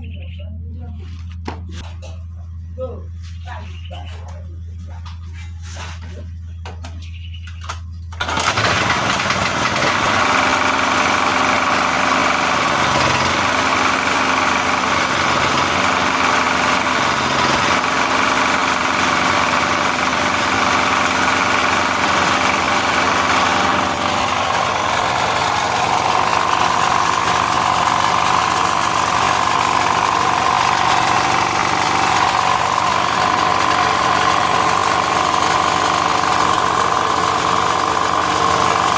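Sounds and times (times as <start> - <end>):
generator engine running: 7.9 - 38.9.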